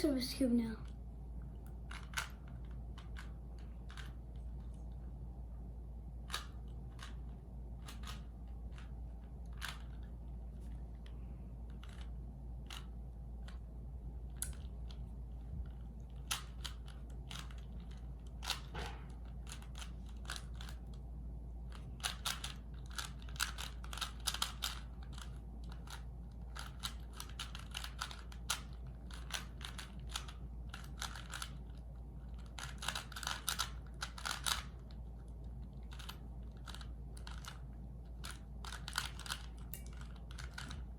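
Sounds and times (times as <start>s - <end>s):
steady low hum: 0.0s - 40.9s
rubik's cube clicking: 1.9s - 3.3s, 11.7s - 13.6s, 16.2s - 18.7s, 19.4s - 20.8s, 22.0s - 26.0s, 26.6s - 34.9s, 35.9s - 37.6s, 38.2s - 40.7s.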